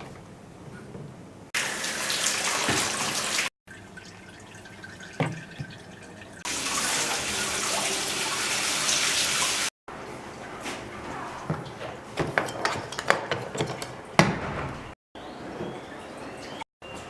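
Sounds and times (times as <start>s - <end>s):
water running: 1.5s - 9.8s.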